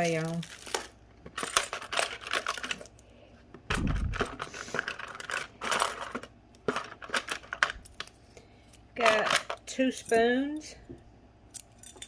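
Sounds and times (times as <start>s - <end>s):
packaging rustling: 0.0s - 3.0s, 3.7s - 8.2s.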